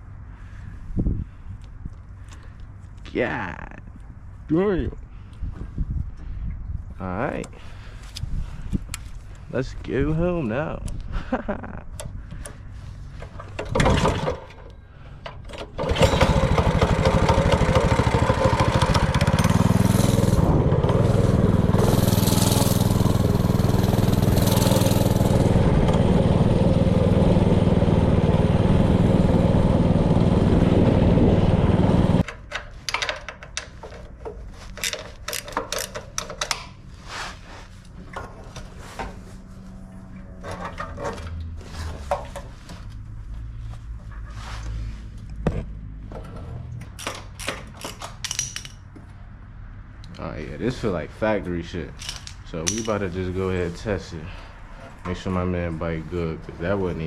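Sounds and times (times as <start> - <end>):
small engine running: 15.8 - 32.2.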